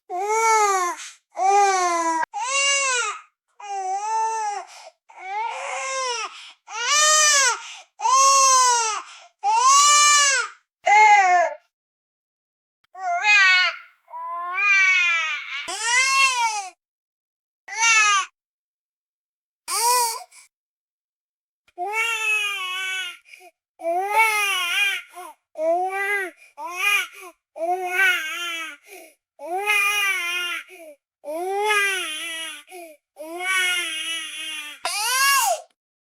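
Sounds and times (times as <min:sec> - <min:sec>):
baby crying softly: 0:00.1 - 0:11.6, 0:13.0 - 0:16.8.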